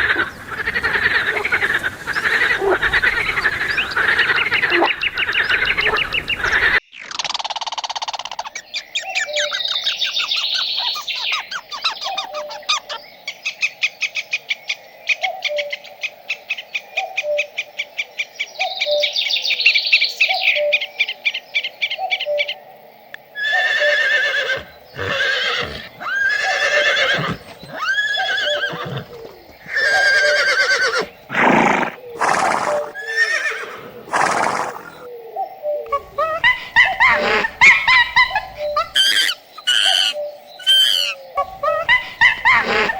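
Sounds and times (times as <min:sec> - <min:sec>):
loud drawn-out animal calls: 0:00.0 - 0:06.8, 0:23.4 - 0:35.1, 0:35.9 - 0:42.9.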